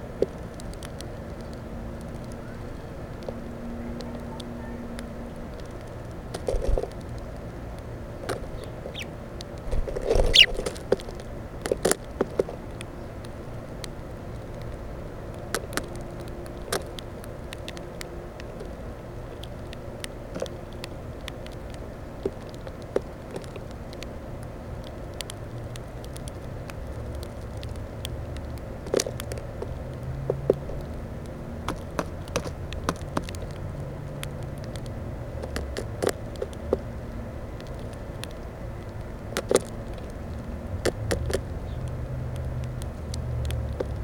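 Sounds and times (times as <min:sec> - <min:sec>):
birds pecking at plastic feeder: 0:05.5 - 0:14.8, 0:31.6 - 0:44.0.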